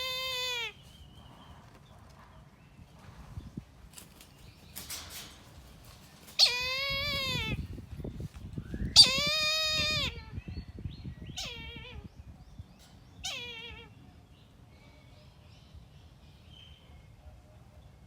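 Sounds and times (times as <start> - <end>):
kite crying: 0.0 - 0.8, 6.4 - 7.7, 9.0 - 10.4.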